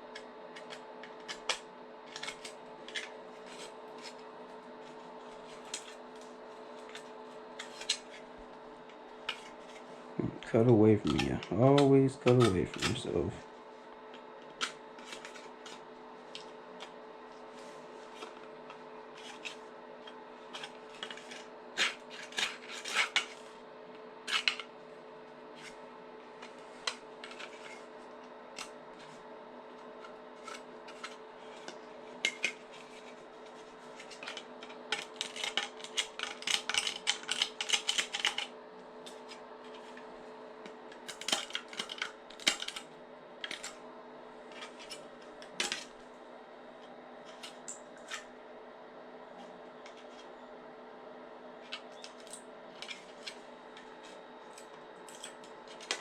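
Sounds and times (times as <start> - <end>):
low steady hum: 0.0 - 56.0
knife scraping plastic: 0.1 - 9.9, 11.0 - 13.3, 14.1 - 23.6, 24.2 - 24.7, 26.4 - 29.2, 29.8 - 40.0, 40.9 - 43.8, 44.5 - 46.0.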